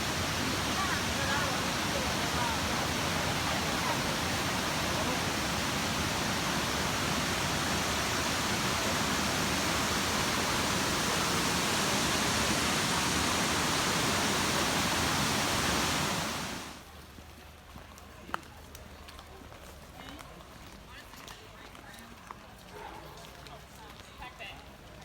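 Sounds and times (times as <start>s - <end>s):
waterfall rushing: 0.0s - 16.8s.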